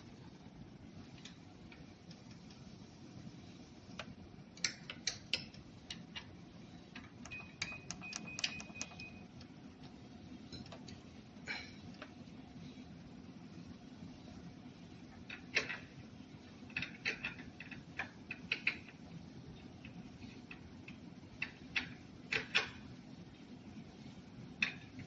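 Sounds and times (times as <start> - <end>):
sharp clicks and taps: 7.0 - 9.5.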